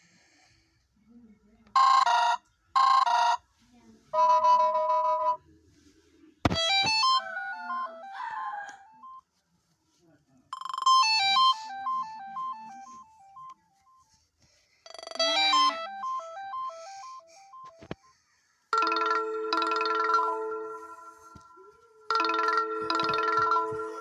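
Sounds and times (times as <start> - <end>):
phone ringtone beeps: 1.8 - 3.4, 4.2 - 5.4, 6.5 - 9.2, 10.5 - 14.1, 14.8 - 18.0, 18.7 - 24.0.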